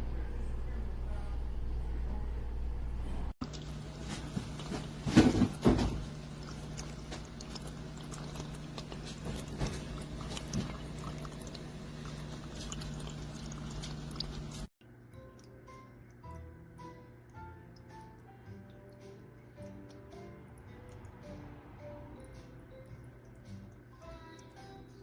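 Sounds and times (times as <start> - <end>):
small ticks and drips: 3.4 - 5.1, 6.0 - 16.4, 17.3 - 21.2
fountain pump hum: 3.4 - 14.7
trickling water: 3.4 - 14.7.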